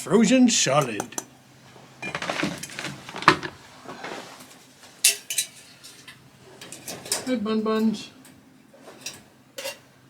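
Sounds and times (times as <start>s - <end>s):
water bowls clinking and knocking: 2.0s - 4.1s.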